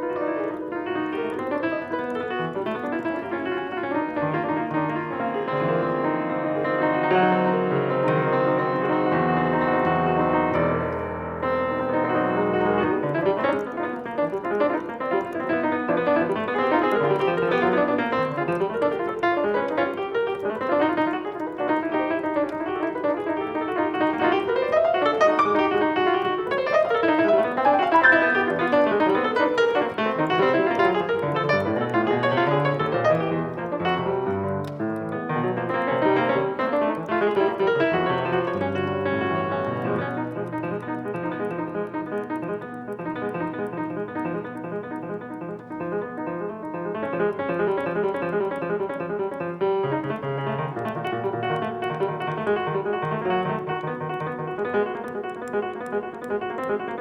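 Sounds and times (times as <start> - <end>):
solo piano playing: 0.0 - 57.0.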